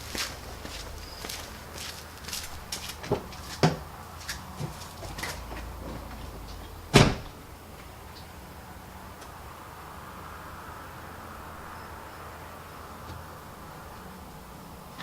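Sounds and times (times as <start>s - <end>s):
door shutting with a thud: 6.9s - 7.4s.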